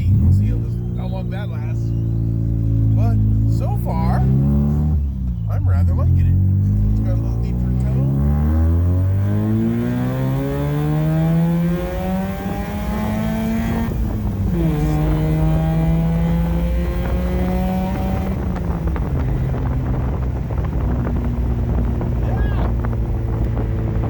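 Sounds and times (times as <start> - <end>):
car engine revving: 0.0 - 24.0
wind noise: 6.4 - 24.0.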